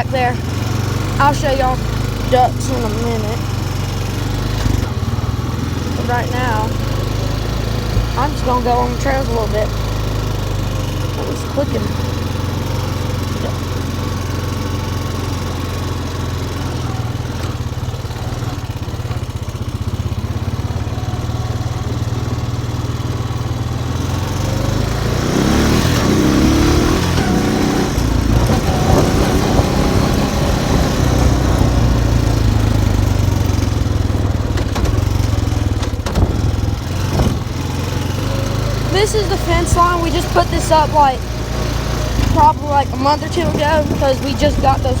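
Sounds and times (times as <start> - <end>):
small vehicle engine running: 0.0 - 45.0.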